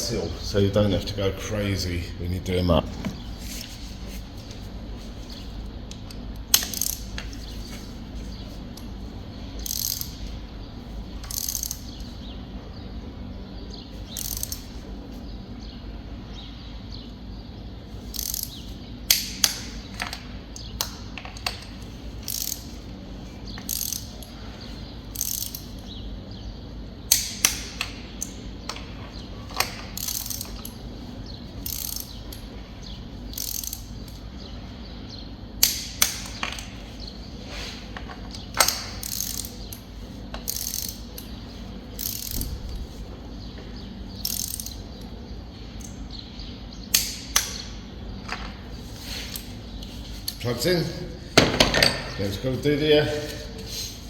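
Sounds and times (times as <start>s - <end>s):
ratchet wrench clicking: 6.0s - 7.5s, 9.6s - 10.3s, 11.2s - 12.1s, 14.1s - 14.7s, 18.1s - 22.9s, 23.5s - 24.4s, 25.1s - 25.9s, 29.6s - 30.8s, 31.6s - 32.5s, 33.3s - 34.2s, 38.4s - 41.3s, 42.0s - 42.8s, 44.2s - 45.1s
sharp metallic clicks: 27.1s - 28.9s, 35.6s - 36.8s, 44.2s - 45.1s, 46.9s - 47.8s.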